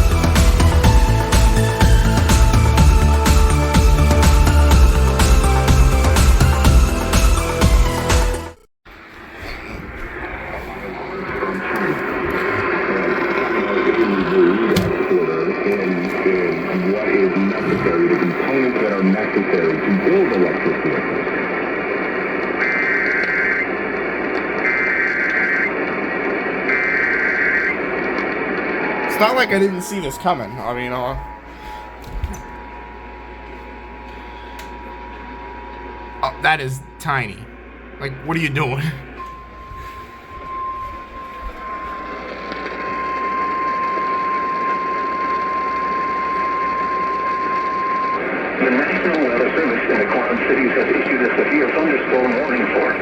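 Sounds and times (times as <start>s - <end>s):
radio static hiss: 9.6s - 32.2s, 46.3s - 53.0s
steady warning alarm tone: 10.4s - 20.3s, 26.5s - 49.8s.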